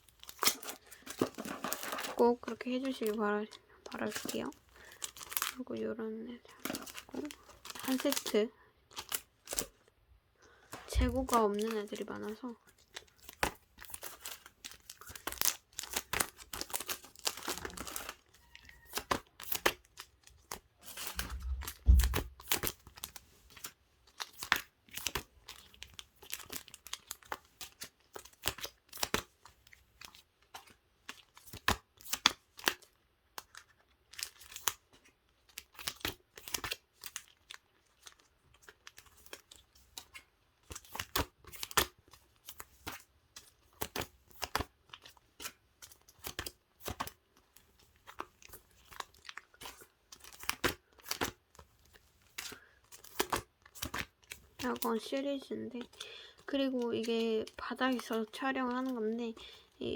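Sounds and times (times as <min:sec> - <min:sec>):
plastic sleeves crinkling: 0:00.0 - 0:59.9
dull thump: 0:21.2 - 0:22.3.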